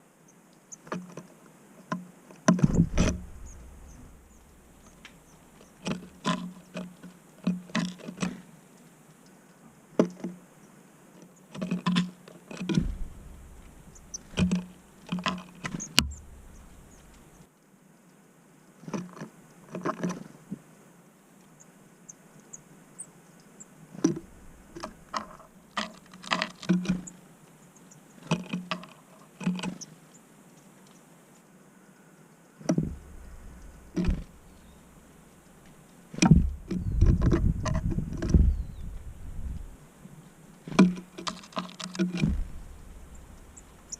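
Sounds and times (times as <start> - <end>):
birds tapping on feeder: 1.9 - 8.4, 11.5 - 17.4, 23.9 - 27.2, 27.8 - 29.9, 32.6 - 39.8, 40.5 - 43.9.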